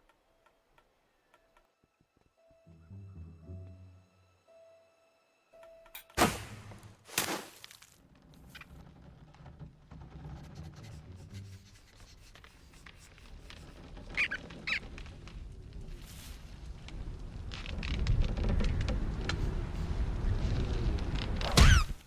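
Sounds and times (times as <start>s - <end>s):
cartoon thud: 6.2s - 7.4s, 21.6s - 22.0s
short high squeaks: 14.0s - 14.9s.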